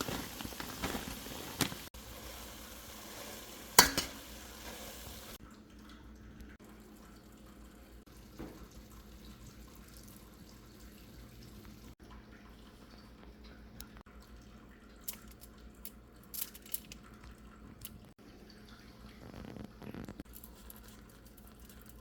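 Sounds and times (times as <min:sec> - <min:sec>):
food sizzling in a frying pan: 0:00.0 - 0:05.4
faint kitchen sounds: 0:00.0 - 0:22.0
utensil clinking on pan: 0:03.8 - 0:04.3.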